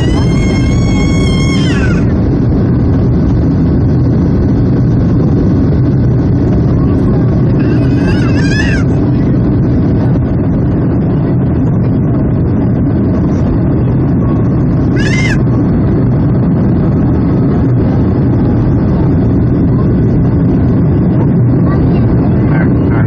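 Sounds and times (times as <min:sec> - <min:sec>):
high squeal: 0:00.0 - 0:02.1, 0:07.6 - 0:08.9, 0:15.0 - 0:15.4
jet engines from inside cabin: 0:00.0 - 0:23.0.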